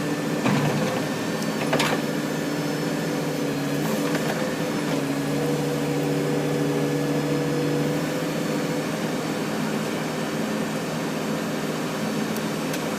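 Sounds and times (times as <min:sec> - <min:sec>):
diesel engine running: 0:00.0 - 0:12.9.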